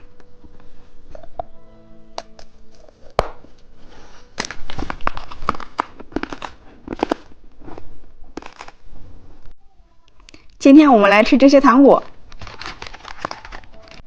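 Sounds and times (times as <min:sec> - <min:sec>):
plastic packaging crinkling: 0:03.8 - 0:08.8, 0:12.0 - 0:14.0.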